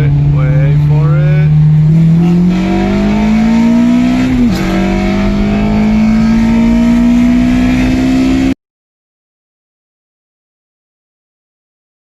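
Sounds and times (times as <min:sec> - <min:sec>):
car engine accelerating hard: 0:00.0 - 0:08.6.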